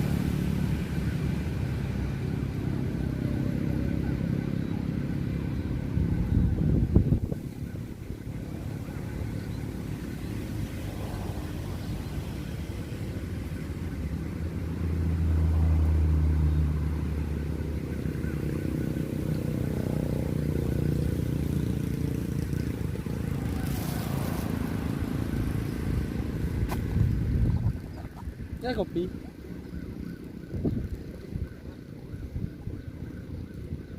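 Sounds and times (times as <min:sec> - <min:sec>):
vehicle engine hum: 0:00.0 - 0:33.9.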